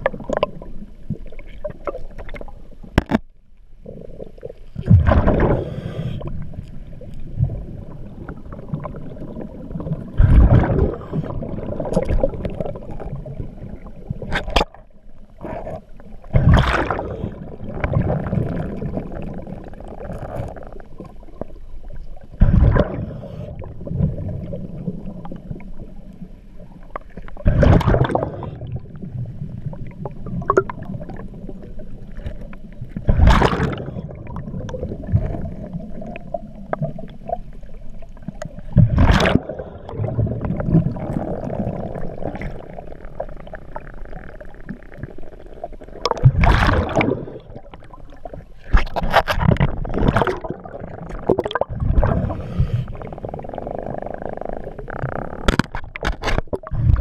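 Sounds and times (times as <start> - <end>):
underwater rumble and gurgling: 0.0 - 57.0
exhaled bubbles rushing: 4.0 - 21.5, 22.3 - 55.7, 56.5 - 57.0.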